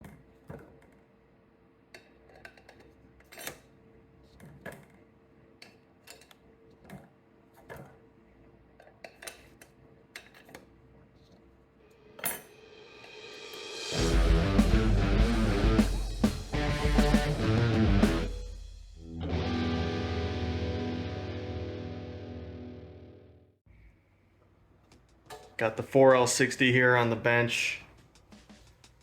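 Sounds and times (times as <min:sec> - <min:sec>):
metal tools clinking: 0:12.2 - 0:12.6
electric guitar rock music: 0:13.8 - 0:23.5.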